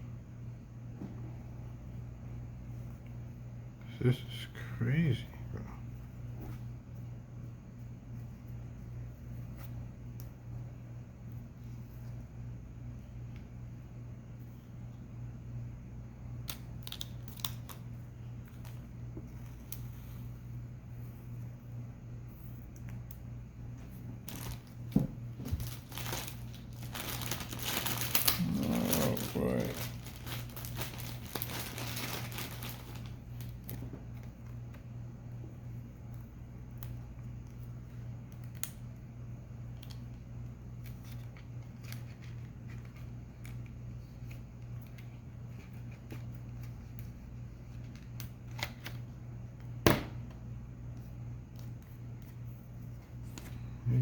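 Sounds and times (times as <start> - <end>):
steady low hum: 0.0 - 54.0
cards and wrappers rustling: 24.2 - 34.8, 40.7 - 49.1.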